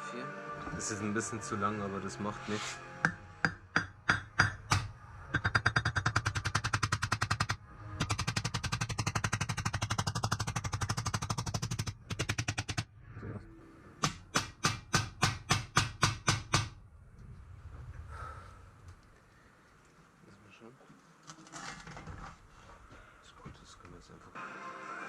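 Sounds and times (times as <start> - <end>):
rapid metal strikes: 3.0 - 12.9.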